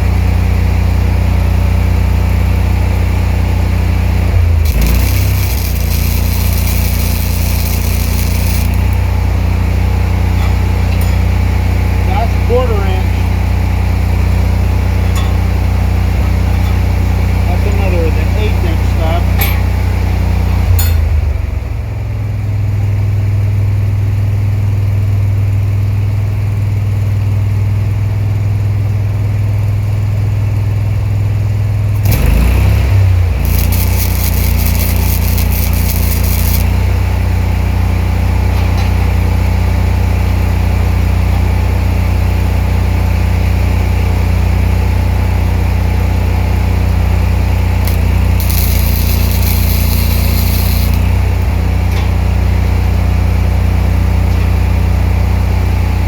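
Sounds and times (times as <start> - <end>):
welder engine running: 0.0 - 21.9, 31.7 - 42.6, 43.5 - 54.3
welding arc crackling hiss: 4.2 - 9.4, 32.0 - 37.0, 47.8 - 51.7.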